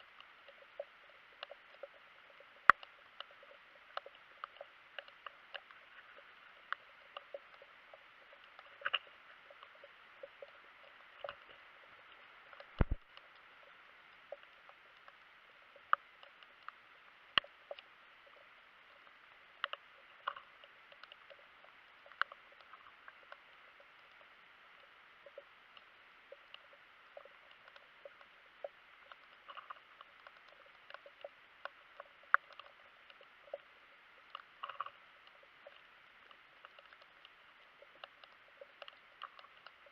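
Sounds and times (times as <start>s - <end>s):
faint underwater hiss: 0.0s - 39.9s
underwater clicks and crackles: 0.0s - 39.9s.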